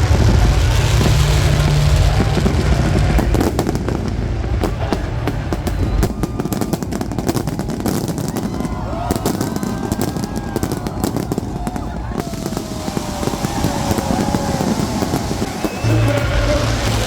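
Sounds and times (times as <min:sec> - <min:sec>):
deep low rumble: 0:00.0 - 0:07.6, 0:13.0 - 0:17.0
fireworks crackling and popping: 0:00.0 - 0:17.0.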